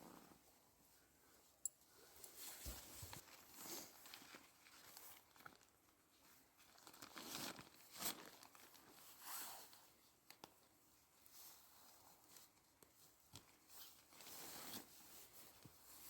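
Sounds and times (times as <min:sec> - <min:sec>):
tent fabric rustling: 0:02.3 - 0:04.7, 0:09.1 - 0:09.8.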